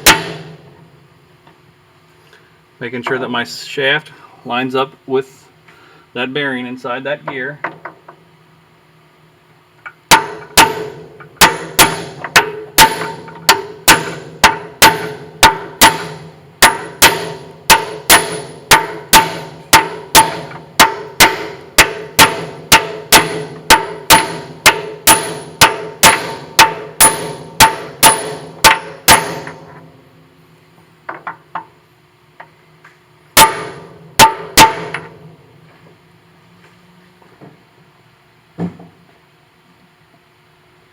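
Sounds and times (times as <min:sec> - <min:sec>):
hammer striking metal block: 0:00.0 - 0:00.6, 0:10.1 - 0:29.9, 0:33.4 - 0:35.2.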